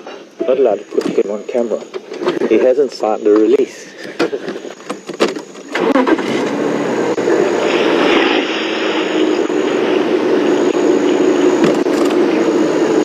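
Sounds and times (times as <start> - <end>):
road noise: 0.0 - 13.0
vehicle engine running: 4.3 - 13.0.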